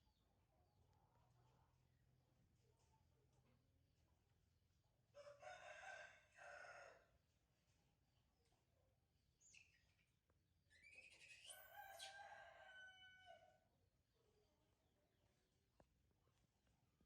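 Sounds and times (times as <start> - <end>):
faint rooster crowing: 5.2 - 7.2, 11.5 - 13.7.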